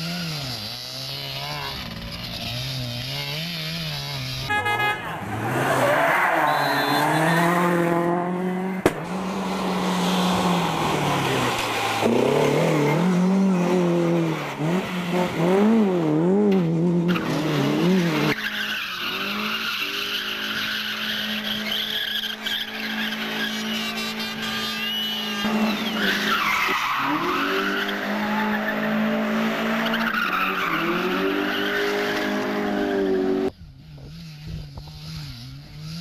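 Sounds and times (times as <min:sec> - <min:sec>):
tyres skidding: 0:00.0 - 0:34.2
rally car engines revving: 0:00.0 - 0:36.0
sharp crack: 0:08.8 - 0:09.2.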